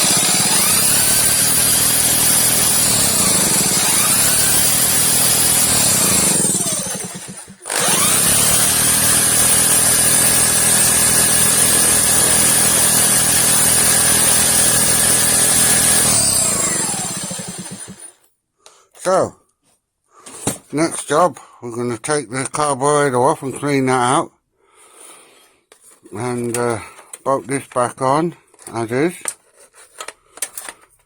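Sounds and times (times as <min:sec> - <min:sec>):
power drill whining: 0:00.0 - 0:18.2.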